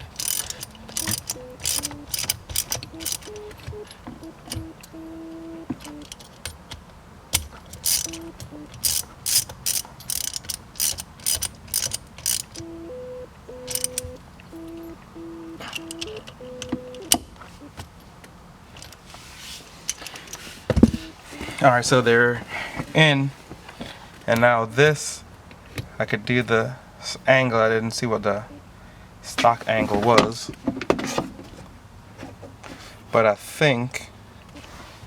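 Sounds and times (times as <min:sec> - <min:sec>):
hand ratchet clicking: 0:00.0 - 0:05.0, 0:07.4 - 0:12.7, 0:13.7 - 0:14.9.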